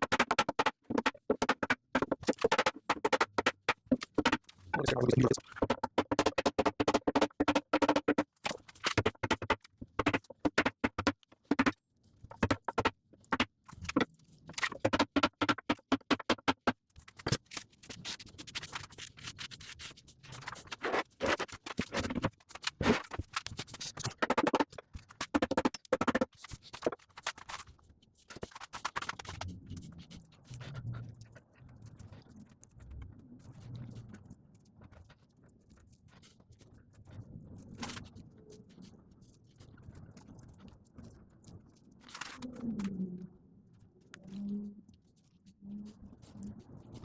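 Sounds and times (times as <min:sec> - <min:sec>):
music with fast percussive beat: 0:00.0 - 0:11.7, 0:12.4 - 0:14.0, 0:14.6 - 0:16.8, 0:24.0 - 0:27.0.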